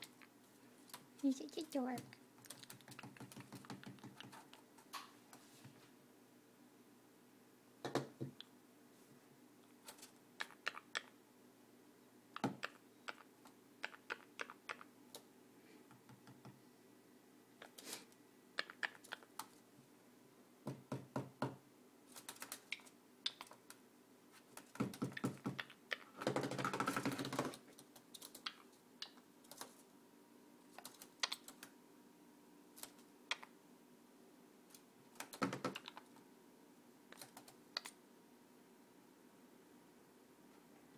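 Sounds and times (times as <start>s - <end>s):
parrot clicking: 2.0s - 4.6s, 10.4s - 11.2s, 12.4s - 15.3s, 18.6s - 19.5s, 22.2s - 23.8s, 30.8s - 31.7s, 32.8s - 33.5s, 35.2s - 36.1s, 37.1s - 38.0s.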